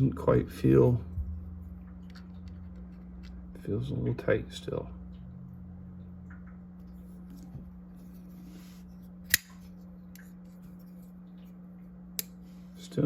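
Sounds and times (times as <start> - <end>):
low steady hum: 0.0 - 13.0
folding knife click: 9.3 - 9.6.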